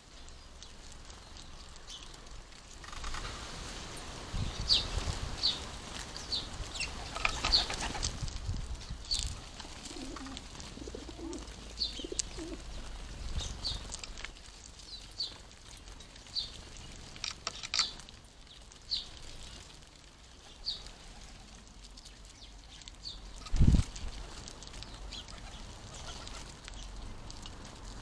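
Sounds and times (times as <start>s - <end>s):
sparrows chirping: 0.0s - 2.2s, 4.4s - 8.0s, 8.8s - 14.2s, 14.8s - 19.7s, 20.3s - 21.3s, 22.0s - 23.7s, 24.6s - 27.2s
low cooing: 9.8s - 12.6s.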